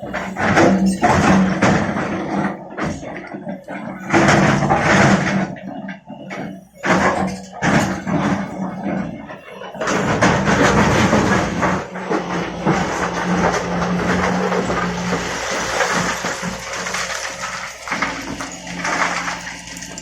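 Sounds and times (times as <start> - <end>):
excavator diesel engine under load: 0.0 - 20.0
bucket scraping rock and soil: 9.8 - 20.0.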